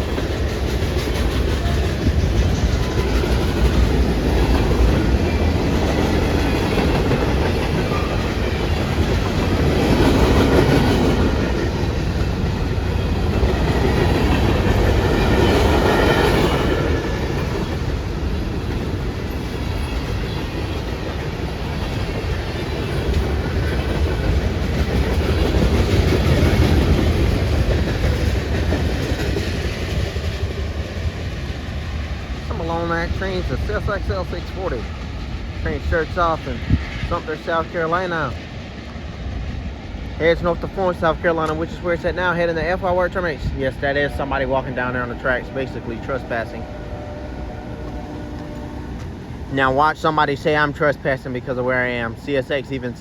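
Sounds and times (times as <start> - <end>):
freight train rumbling past: 0.0 - 53.0.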